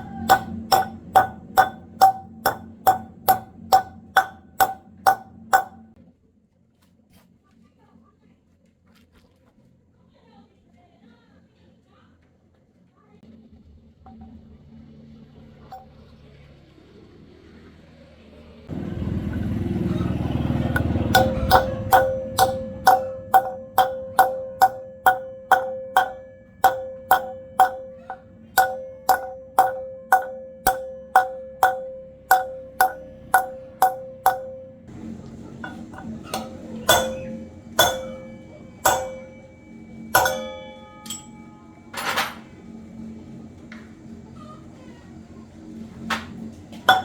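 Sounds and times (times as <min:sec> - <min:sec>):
metal clinks: 0:00.0 - 0:05.9, 0:20.8 - 0:34.8, 0:35.6 - 0:42.6
hammer blows on metal: 0:00.0 - 0:06.0, 0:20.6 - 0:42.1.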